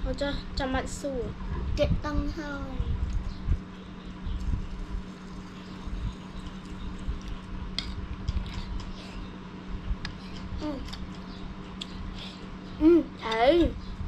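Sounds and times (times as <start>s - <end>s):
low hum: 0.0s - 14.0s
wet chewing: 4.4s - 9.0s.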